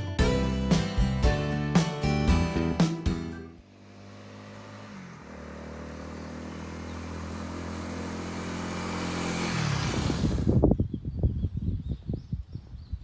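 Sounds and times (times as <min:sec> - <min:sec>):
motorcycle engine running: 0:03.6 - 0:10.8.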